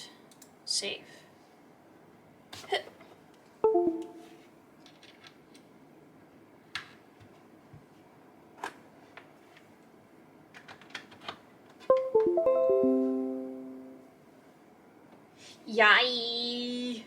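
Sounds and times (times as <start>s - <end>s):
plucked string notes: 3.6s - 4.3s, 11.9s - 14.0s.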